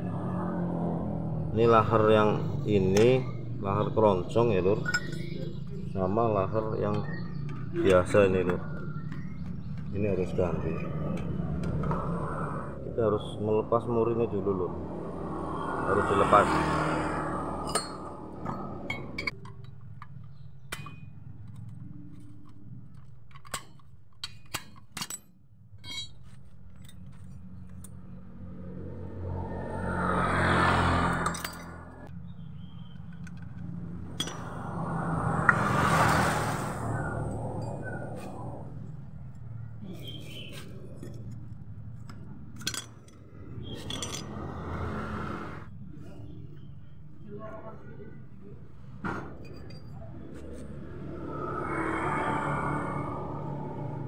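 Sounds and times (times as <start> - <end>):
metal parts clinking: 4.8 - 5.4, 18.9 - 27.8, 31.2 - 31.7, 42.0 - 44.4.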